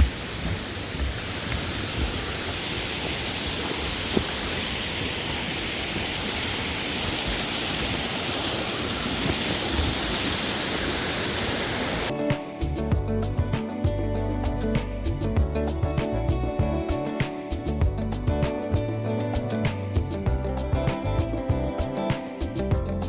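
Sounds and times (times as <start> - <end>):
stream rushing over rocks: 0.0 - 12.6.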